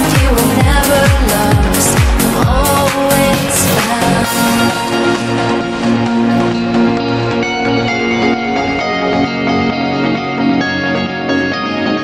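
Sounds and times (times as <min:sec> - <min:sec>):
plucked guitar-like notes: 0:03.8 - 0:12.0
sustained tones: 0:04.1 - 0:11.0.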